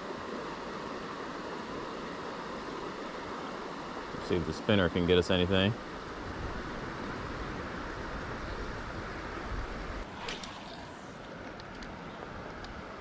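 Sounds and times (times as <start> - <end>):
wind: 0.0 - 13.0
fishing reel cast whizz: 10.0 - 11.4.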